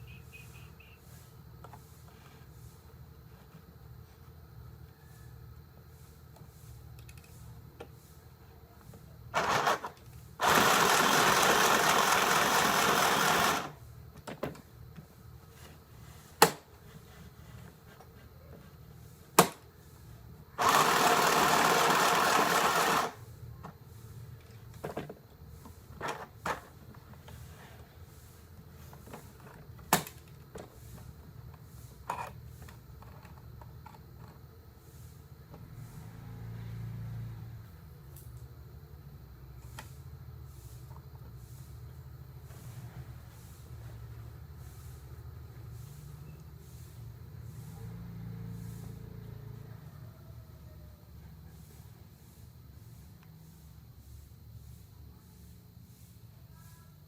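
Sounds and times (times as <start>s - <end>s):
sewing machine running: 9.4s - 13.8s, 20.6s - 23.2s.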